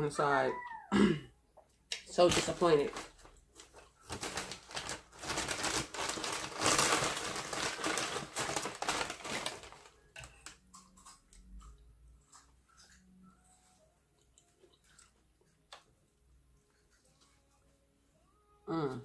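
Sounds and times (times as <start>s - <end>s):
sandwich wrapper crinkling: 2.0s - 11.2s.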